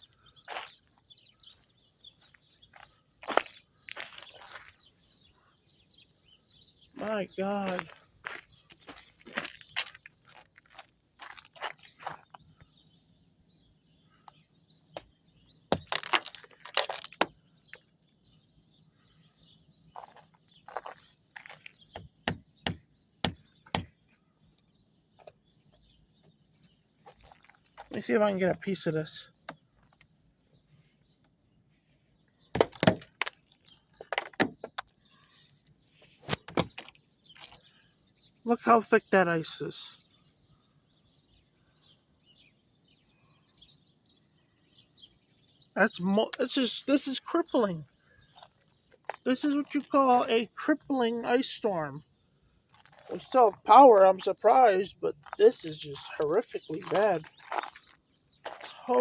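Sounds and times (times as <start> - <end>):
footsteps crunching on icy snow: 0.0 - 5.0, 7.0 - 12.5, 15.7 - 18.0, 20.0 - 21.9, 27.0 - 28.1, 36.1 - 37.6, 48.3 - 50.4, 52.7 - 59.0
ice cracking and snapping: 15.7 - 18.1, 32.6 - 35.0, 52.7 - 53.4, 56.1 - 59.0.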